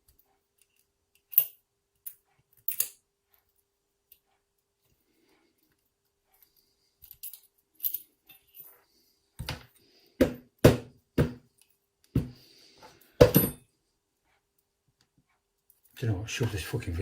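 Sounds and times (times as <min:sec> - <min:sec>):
metal clicks of lock parts: 0:00.1 - 0:03.0
sharp knocks on workbench: 0:10.2 - 0:11.4, 0:12.2 - 0:12.4, 0:13.2 - 0:13.6.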